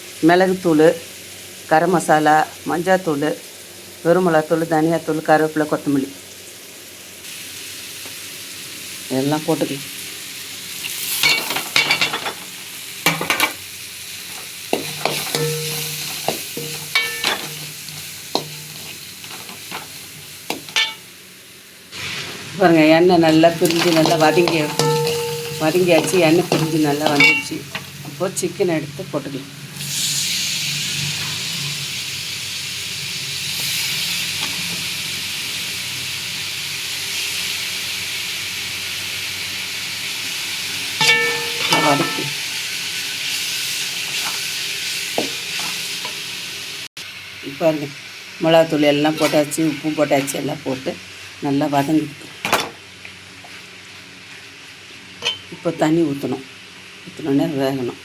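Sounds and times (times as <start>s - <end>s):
oil sizzling: 0.0s - 52.5s
ladle scraping a pan: 14.3s - 21.0s, 23.6s - 27.9s, 41.0s - 42.4s, 49.1s - 49.7s.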